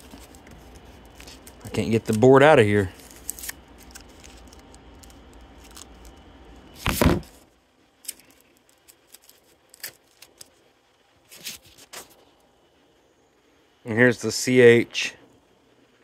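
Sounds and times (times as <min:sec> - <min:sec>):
packaging crinkle: 0:00.0 - 0:07.4, 0:08.0 - 0:10.6
packaging rustling and scraping: 0:00.0 - 0:07.4, 0:11.2 - 0:12.3.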